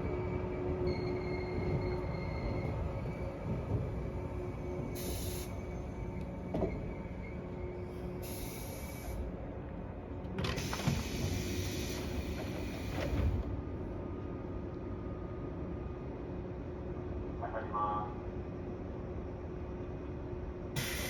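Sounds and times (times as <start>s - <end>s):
electric train equipment hum: 0.0s - 21.0s
compressed air hiss: 5.0s - 5.5s, 8.2s - 9.2s, 20.8s - 21.0s.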